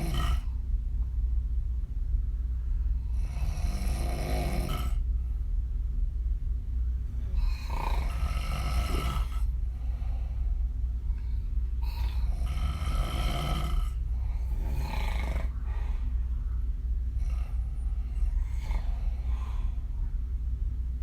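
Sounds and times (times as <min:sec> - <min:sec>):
woman snoring: 0:00.0 - 0:00.5, 0:03.2 - 0:05.0, 0:07.3 - 0:09.5, 0:11.8 - 0:15.6, 0:17.2 - 0:19.4
steady low hum: 0:00.0 - 0:21.0.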